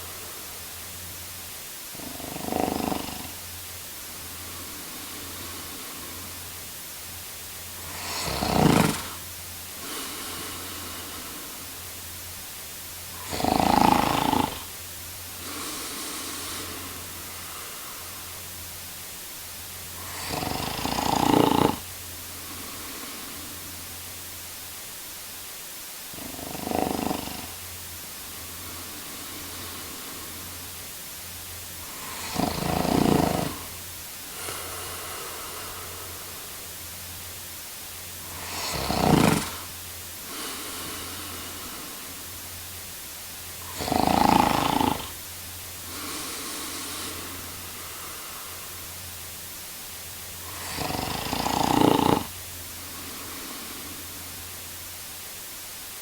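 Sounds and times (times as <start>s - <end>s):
low hum and hiss: 0.0s - 56.0s
man snoring: 1.9s - 3.5s, 4.2s - 6.6s, 7.7s - 12.0s, 13.1s - 18.5s, 19.9s - 23.8s, 26.1s - 27.7s, 28.3s - 30.9s, 31.8s - 36.7s, 38.2s - 42.4s, 43.6s - 48.9s, 50.4s - 54.4s.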